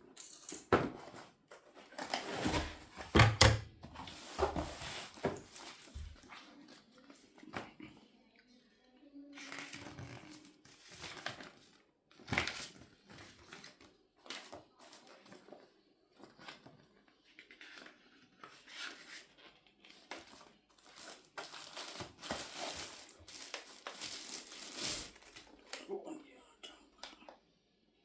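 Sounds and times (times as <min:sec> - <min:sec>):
packaging crinkling and tearing: 0:17.4 - 0:25.8.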